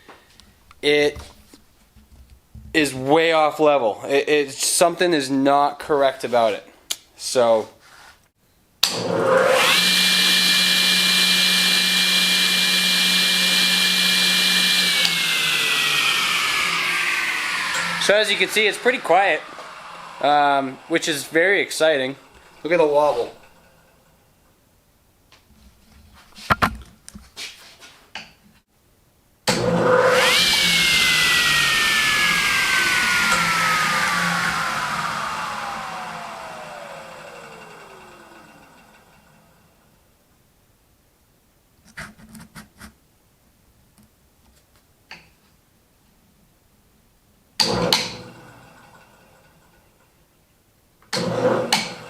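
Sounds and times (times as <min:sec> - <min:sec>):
table saw whine: 0:08.9 - 0:24.2, 0:29.5 - 0:39.8, 0:47.6 - 0:50.1, 0:51.2 - 0:52.0
knocks and clicks: 0:26.4 - 0:27.2.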